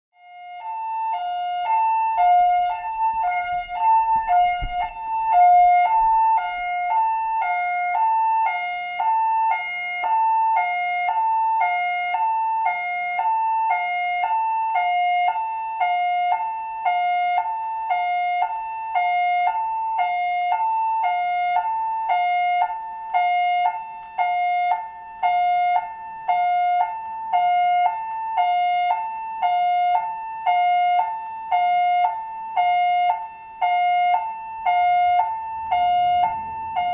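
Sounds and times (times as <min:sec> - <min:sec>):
police two-tone siren: 0:00.1 - 0:36.9
faint low rumble: 0:35.0 - 0:36.9.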